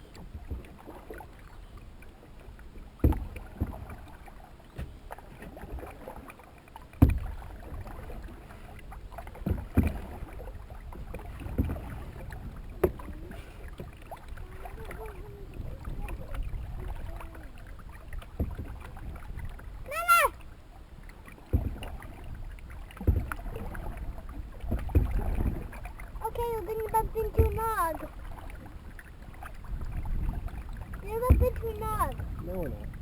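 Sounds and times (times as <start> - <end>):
paddling water rumble: 0.0 - 33.0
sharp knocks on canoe: 3.0 - 4.0, 7.0 - 7.4, 9.4 - 10.2, 12.8 - 13.2, 21.5 - 22.0, 23.0 - 23.6, 24.6 - 25.6, 27.3 - 28.0.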